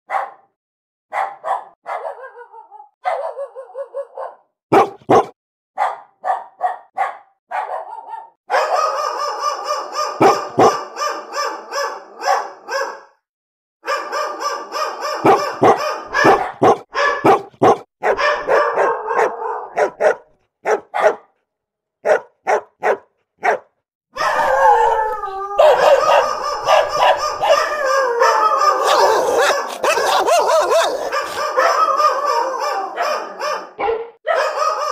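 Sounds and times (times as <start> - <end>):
dogs barking: 0.1 - 0.5, 1.1 - 13.2, 13.8 - 21.4, 22.0 - 34.9
dog whining cries: 24.2 - 33.0.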